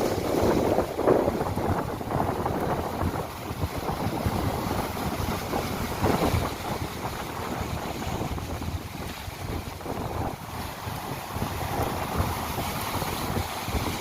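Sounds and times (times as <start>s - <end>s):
sea waves breaking on shore: 0.0s - 14.0s
wind buffeting microphone: 0.0s - 14.0s.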